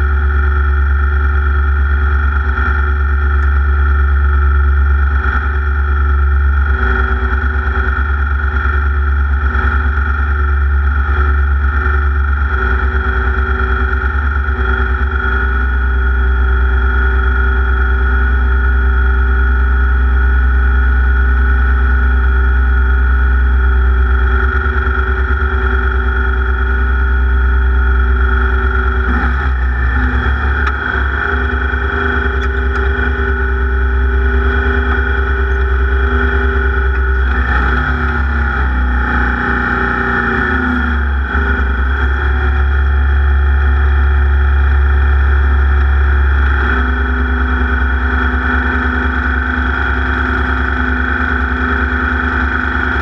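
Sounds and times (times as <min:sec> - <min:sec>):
racing engine at high revs: 0:28.2 - 0:53.0.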